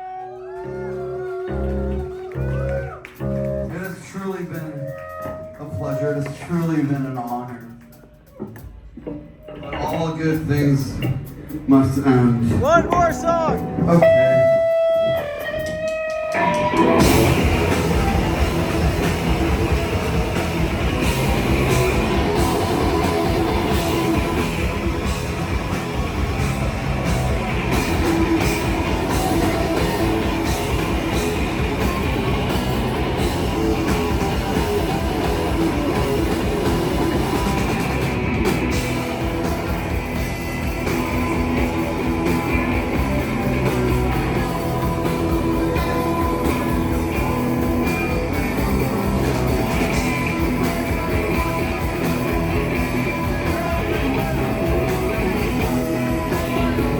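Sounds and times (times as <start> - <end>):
rock band playing: 0.0 - 56.9
held guitar tone: 12.4 - 56.9.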